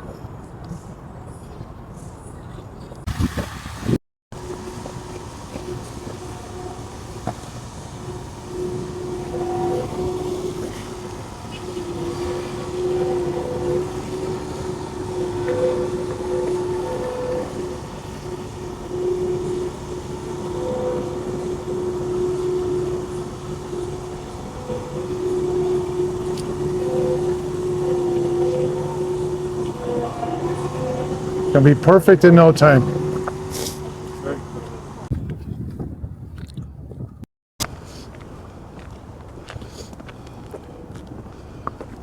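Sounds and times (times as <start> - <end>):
ice resurfacer drone: 3.1 - 35.1.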